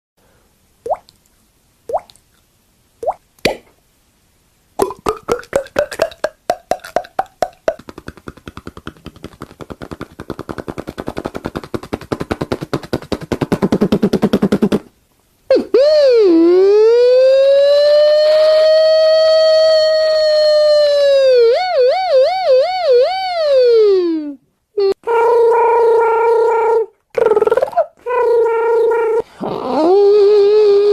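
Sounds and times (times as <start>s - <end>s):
mouth-made pops: 0.9s - 1.2s, 1.9s - 2.2s, 3.0s - 3.8s, 4.8s - 14.9s
fast mouth-made rattle: 4.8s - 14.9s.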